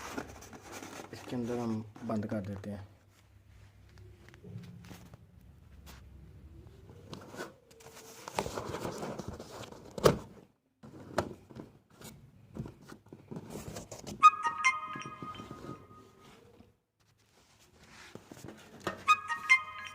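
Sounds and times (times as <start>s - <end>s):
cardboard box rustling: 0.0s - 1.9s, 12.7s - 14.2s
brief high squeak: 14.2s - 16.2s.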